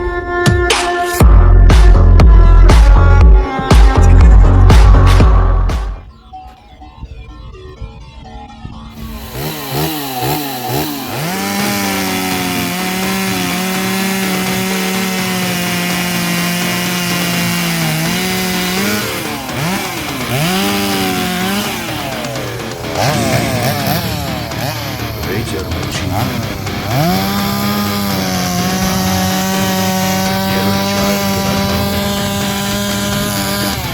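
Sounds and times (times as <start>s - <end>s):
chainsaw engine revving: 8.9s - 33.9s.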